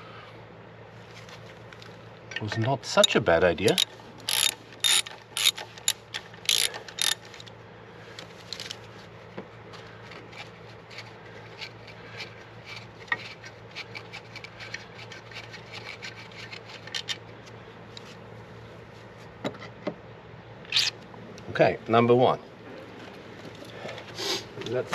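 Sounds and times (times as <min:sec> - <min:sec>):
ratchet wrench clicking: 0:03.6 - 0:07.2.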